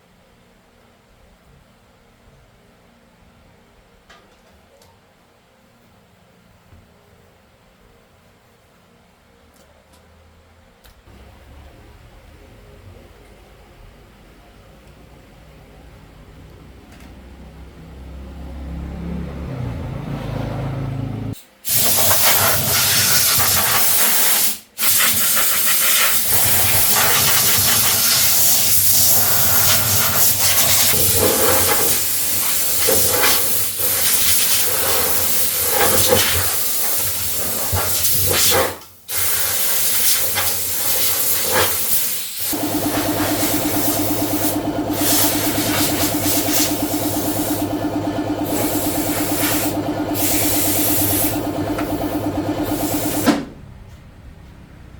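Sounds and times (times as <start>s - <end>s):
spray gun hissing: 21.6s - 38.5s, 39.1s - 47.8s, 48.4s - 53.4s
motor humming: 42.6s - 53.3s.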